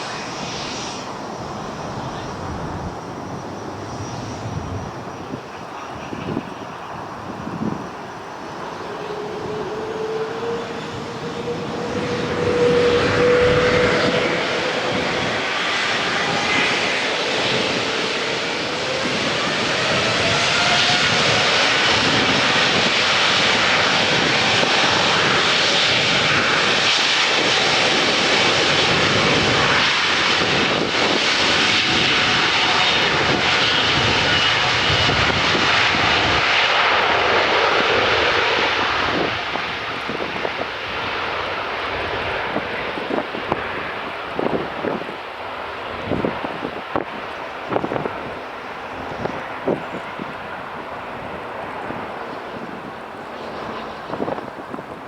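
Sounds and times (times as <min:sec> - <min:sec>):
jet engines roaring: 0:00.0 - 0:55.0
faint rising engine whine: 0:07.1 - 0:22.6.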